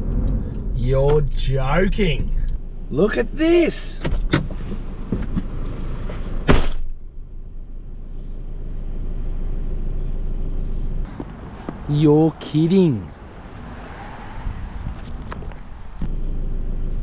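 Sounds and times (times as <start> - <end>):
muffled car rumble: 0.0 - 17.0
car door shutting: 4.0 - 6.9.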